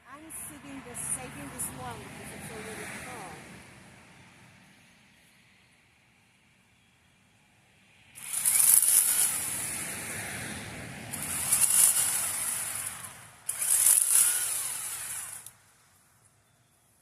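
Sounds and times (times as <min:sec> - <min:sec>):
chainsaw running: 0:08.2 - 0:16.0.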